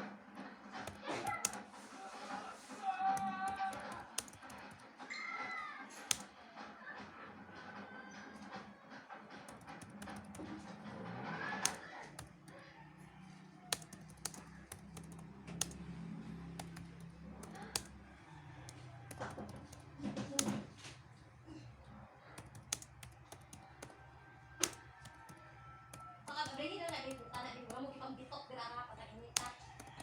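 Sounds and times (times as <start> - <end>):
computer keyboard typing: 0.8 - 1.7, 2.9 - 5.0, 6.0 - 6.3, 9.4 - 20.6, 22.3 - 28.0, 29.3 - 30.0.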